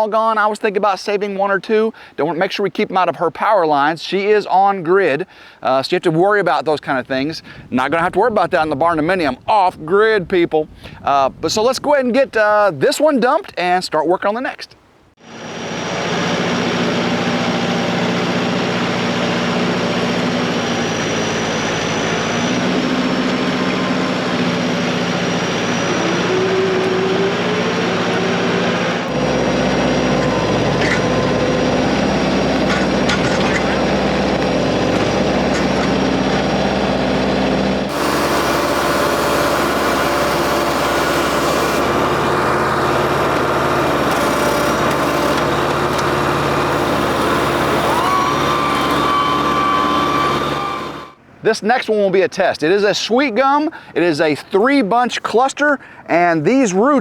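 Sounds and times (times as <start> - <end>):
rising whine: 15.2 - 51.2
tractor diesel engine running: 15.4 - 51.2.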